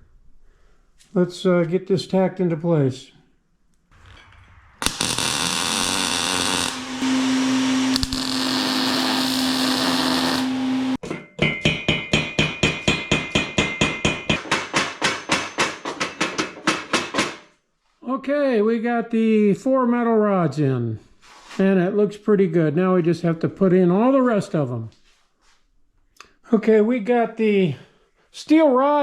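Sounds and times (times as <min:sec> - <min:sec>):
harsh buzzing with low hum: 0:04.8 - 0:11.0.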